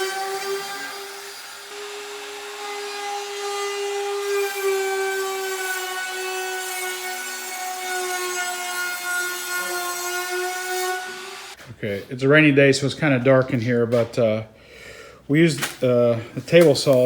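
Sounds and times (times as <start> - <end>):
power tool cutting wood: 0.0 - 11.6.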